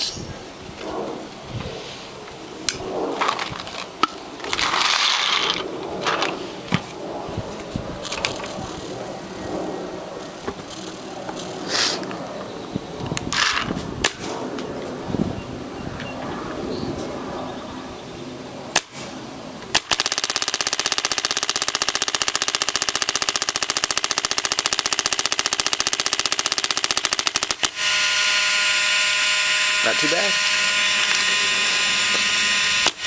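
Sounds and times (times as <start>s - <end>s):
short hissing bursts: 11.6s - 12.0s.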